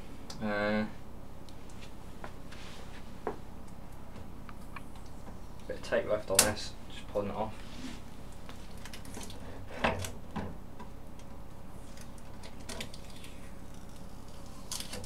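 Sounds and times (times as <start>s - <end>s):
packing tape peeling with clicks: 11.2s - 15.0s.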